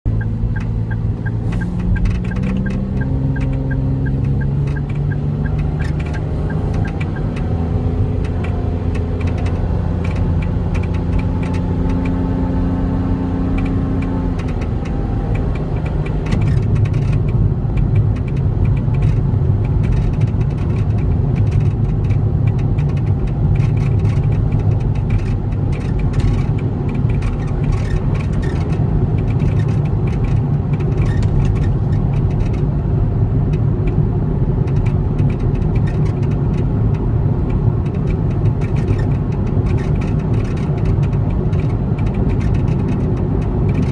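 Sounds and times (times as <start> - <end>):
road noise: 0.0 - 43.9
rattling clicks and knocks: 13.6 - 32.7, 34.6 - 43.9.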